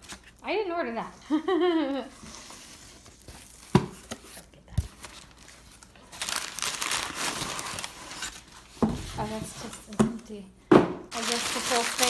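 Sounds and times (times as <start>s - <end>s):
packing paper crinkling: 4.8s - 8.7s, 11.1s - 12.0s.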